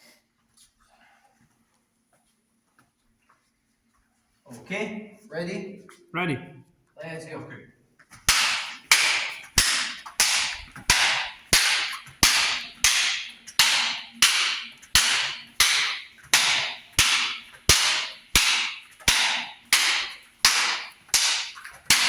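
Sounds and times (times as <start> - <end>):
sword chopping blows: 8.3 - 22.0.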